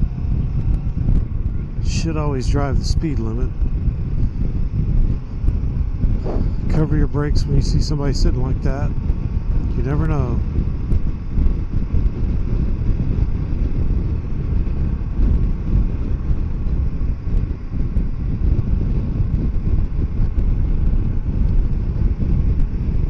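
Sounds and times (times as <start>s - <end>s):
motorcycle engine cruising: 0.0s - 23.0s
wind rumble on microphone: 0.0s - 23.0s.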